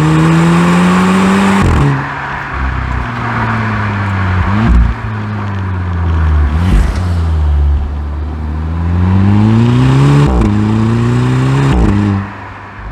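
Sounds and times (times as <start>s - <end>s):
car engine revving: 0.0s - 12.9s
gear upshift crack: 1.6s - 9.1s.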